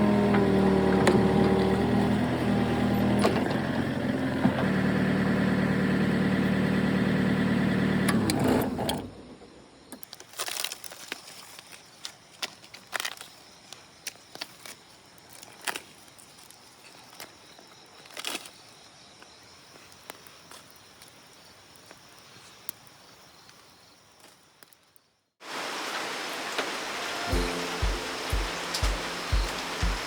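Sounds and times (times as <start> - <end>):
faint outdoor background: 0.0 - 30.0
crackles and snaps: 9.9 - 18.8, 19.7 - 25.1
running water rushing: 25.4 - 30.0.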